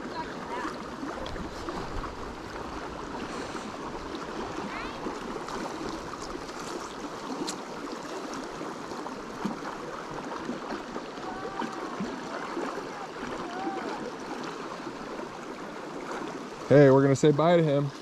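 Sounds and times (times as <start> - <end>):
creek water running: 0.0 - 18.0.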